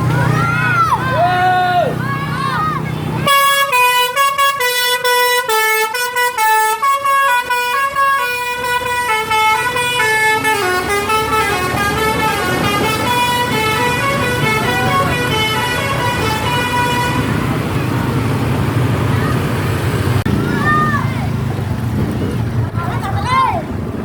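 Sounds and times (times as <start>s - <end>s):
bus engine rumble: 0.0s - 24.0s
musical air horn tune: 3.2s - 17.3s.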